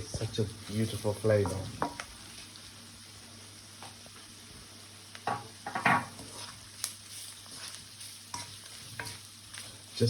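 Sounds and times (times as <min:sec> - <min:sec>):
onions sizzling in oil: 0:00.0 - 0:10.0
spoon scraping a pan: 0:05.3 - 0:09.8.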